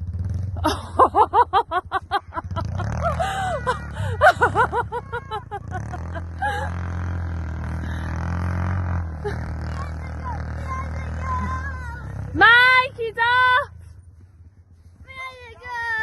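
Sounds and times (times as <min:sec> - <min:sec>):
quad bike engine running: 0:00.0 - 0:16.0
child laughing breathlessly: 0:01.9 - 0:06.9.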